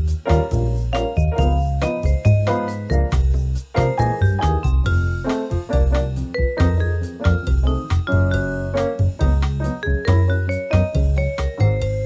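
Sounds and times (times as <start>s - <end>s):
bouncy instrumental music: 0.0s - 12.0s.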